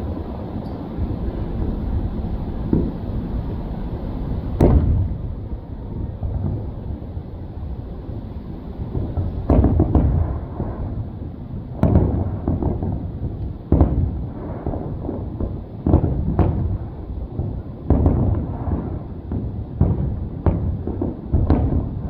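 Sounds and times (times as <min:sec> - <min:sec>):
low rumble: 0:00.0 - 0:15.8
fireworks booming overhead: 0:00.0 - 0:22.0.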